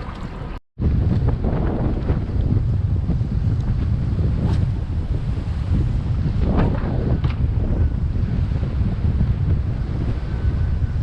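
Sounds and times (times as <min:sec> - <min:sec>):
strong wind buffeting microphone: 0:00.0 - 0:11.0.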